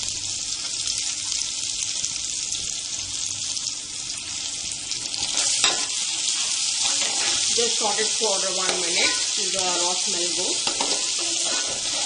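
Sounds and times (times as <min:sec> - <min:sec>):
paste sizzling in hot oil: 0:00.0 - 0:12.0.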